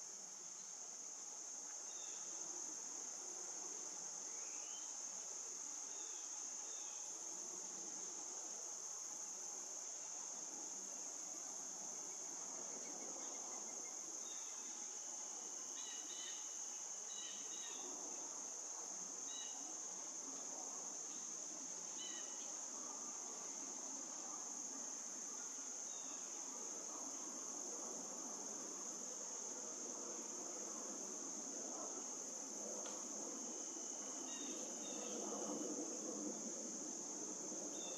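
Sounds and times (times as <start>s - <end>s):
high-pitched insect trilling: 33.6s - 35.4s.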